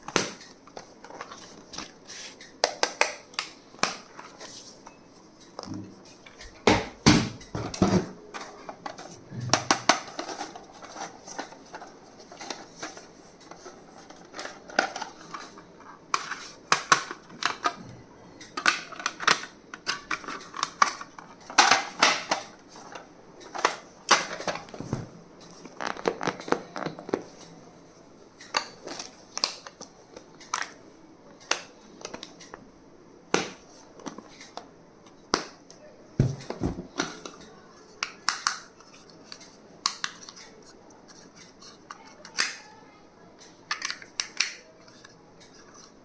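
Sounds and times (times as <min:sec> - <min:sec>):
stationery packaging being unpacked: 0:25.6 - 0:27.3.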